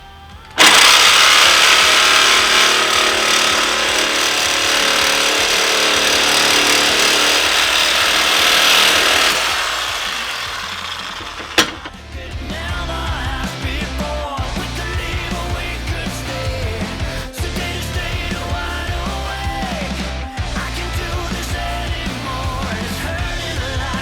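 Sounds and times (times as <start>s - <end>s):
power tool running: 0.4s - 12.0s.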